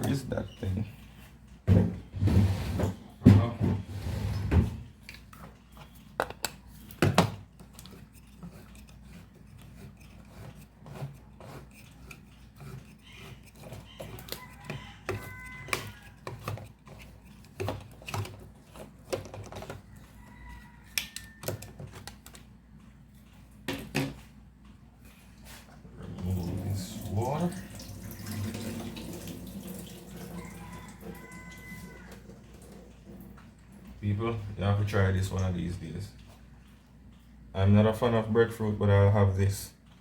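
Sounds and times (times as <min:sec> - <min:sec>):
hand can opener on tin: 0:07.5 - 0:19.8.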